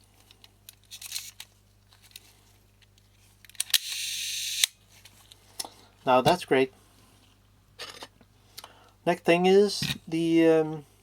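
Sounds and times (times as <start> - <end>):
lens parts clicking and scraping: 0.4 - 5.4.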